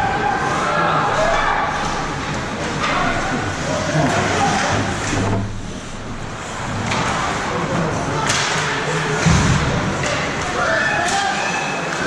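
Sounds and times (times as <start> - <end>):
hum of voices: 6.0 - 12.0
hockey sticks and puck cracking: 6.8 - 12.0.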